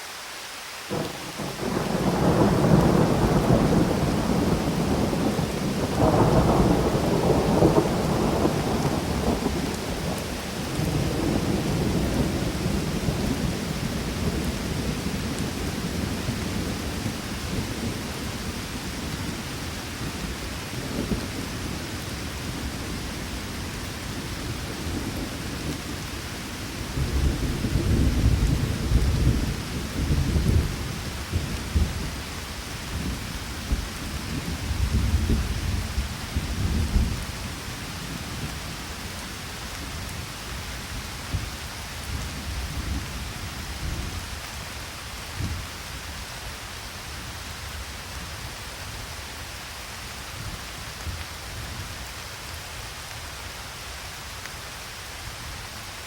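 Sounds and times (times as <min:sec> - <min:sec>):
rain hissing: 0:00.0 - 0:56.0
rolling thunder: 0:00.9 - 0:19.4, 0:26.8 - 0:32.2.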